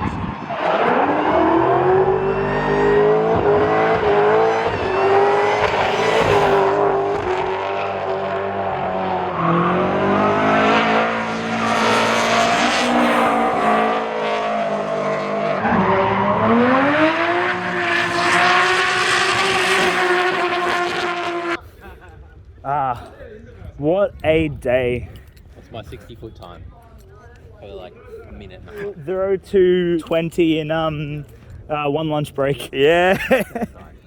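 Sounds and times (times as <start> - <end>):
car engine at high revs: 0.0 - 21.6.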